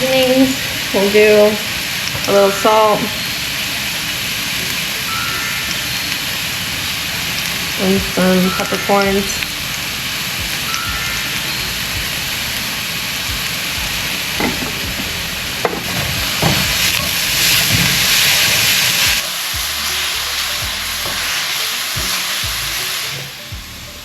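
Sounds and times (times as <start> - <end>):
mushrooms sizzling in a pan: 0.0 - 24.0
stirring knocks: 13.3 - 19.2.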